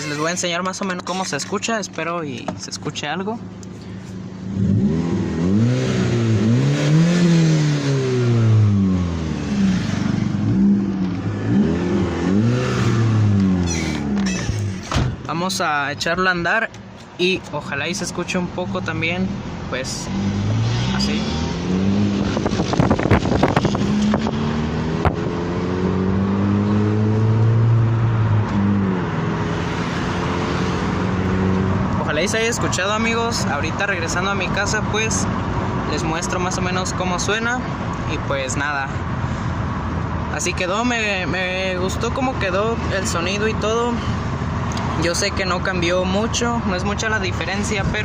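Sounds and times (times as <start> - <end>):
car engine revving: 3.4 - 15.3, 18.0 - 38.1.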